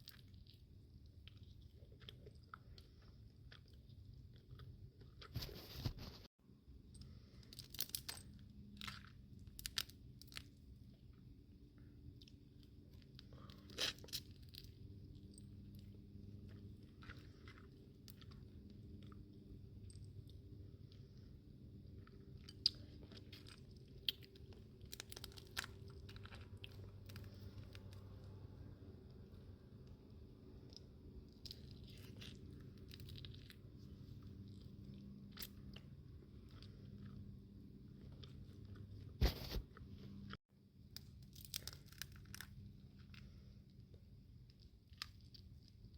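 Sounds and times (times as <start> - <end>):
crunching and chewing: 0.0 - 6.2, 6.9 - 45.9
shells cracking and tearing: 41.0 - 42.7.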